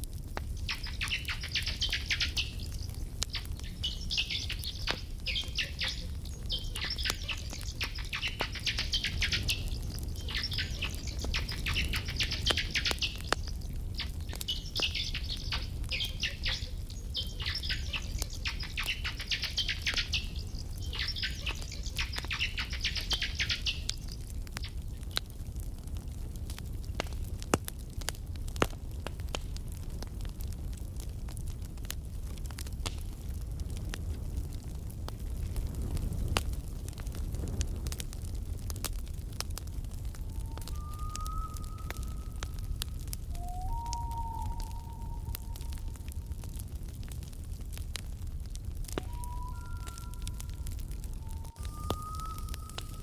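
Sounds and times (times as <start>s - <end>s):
campfire crackling and popping: 0.0s - 53.0s
rapid high chirping trills: 0.6s - 24.1s.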